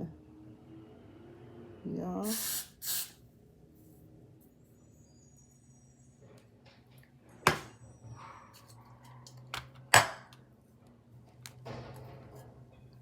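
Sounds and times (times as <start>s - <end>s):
hard objects knocking: 7.5s - 7.8s, 9.5s - 10.4s.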